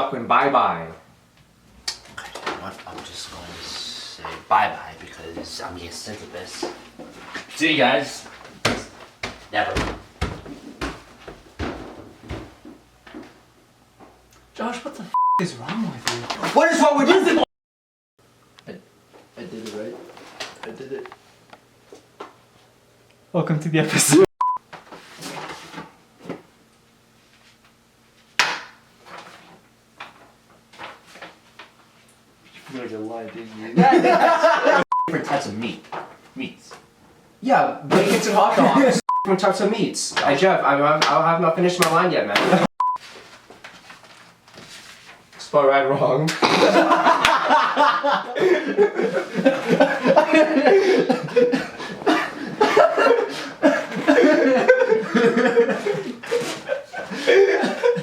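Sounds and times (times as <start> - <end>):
people laughing: 33.7 - 34.9, 46.4 - 58.0.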